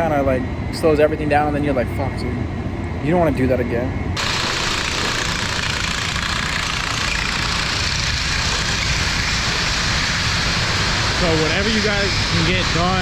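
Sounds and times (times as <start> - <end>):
engine running: 3.9 - 13.0.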